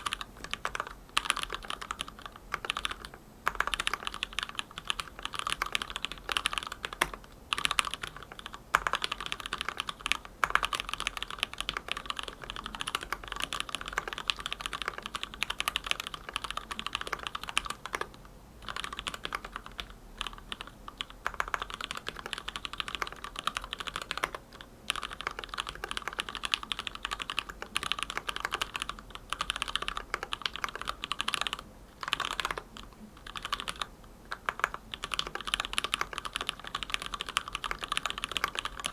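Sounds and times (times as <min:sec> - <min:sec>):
typing on a mechanical keyboard: 0:00.0 - 0:38.9.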